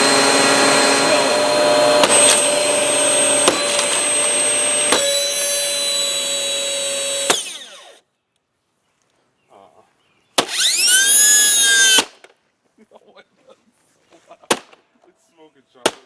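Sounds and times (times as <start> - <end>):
vacuum motor whining: 0.0 - 8.0, 10.5 - 12.0.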